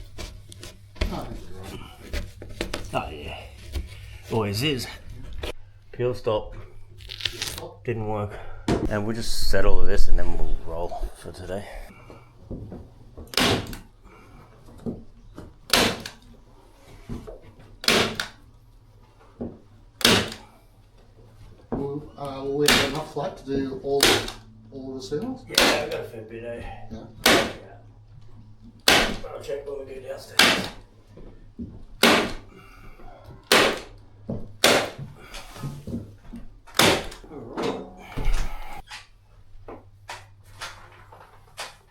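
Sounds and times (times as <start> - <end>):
loud thumps: 28.8 - 29.3.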